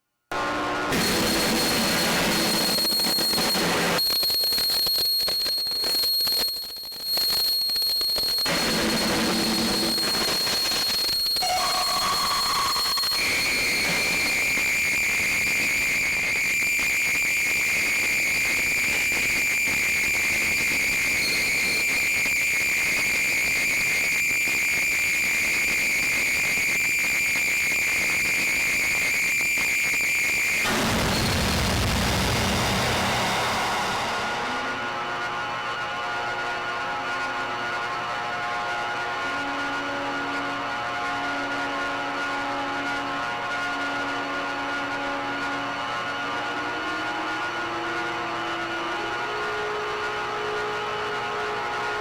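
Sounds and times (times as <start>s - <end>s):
piercing whistle-like tone: 1.0s - 31.6s, 32.3s - 35.3s.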